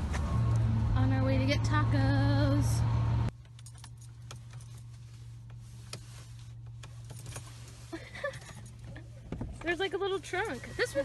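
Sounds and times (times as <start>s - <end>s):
car cabin hum: 3.3s - 11.0s.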